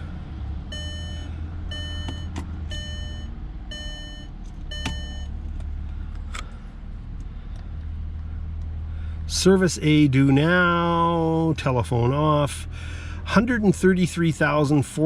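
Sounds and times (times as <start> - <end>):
dashboard warning chime beeping: 0.6 - 5.4.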